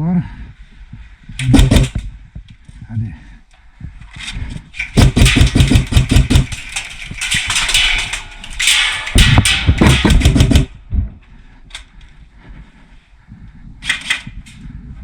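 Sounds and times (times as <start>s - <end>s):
airsoft gun full-auto bursts: 1.4s - 2.0s, 5.0s - 6.5s, 9.9s - 10.7s.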